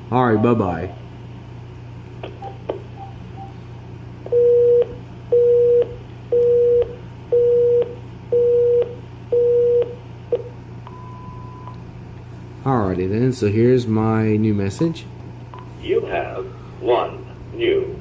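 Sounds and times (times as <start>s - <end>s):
pulsing busy signal tone: 4.3s - 10.0s.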